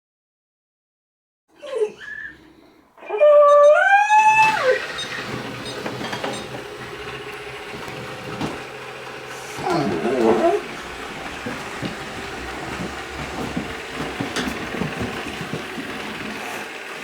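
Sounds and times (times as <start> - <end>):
robot vacuum whirring: 4.1 - 17.0.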